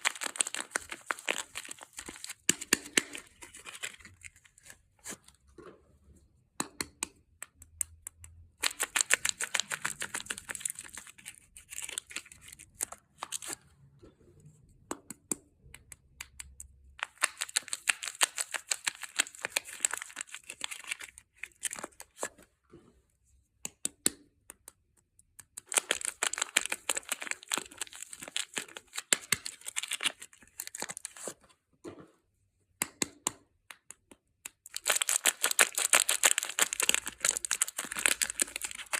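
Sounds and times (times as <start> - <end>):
packaging being torn and crinkled: 0.0 - 2.5, 8.6 - 13.6, 17.0 - 22.0, 25.6 - 31.4, 34.7 - 38.9.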